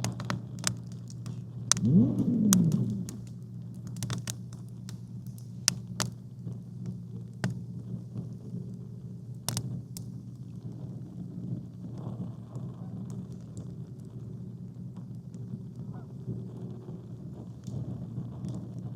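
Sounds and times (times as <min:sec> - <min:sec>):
steady low hum: 0:00.0 - 0:12.8
campfire crackling: 0:00.0 - 0:18.9
short pitched bending sound: 0:01.8 - 0:03.3.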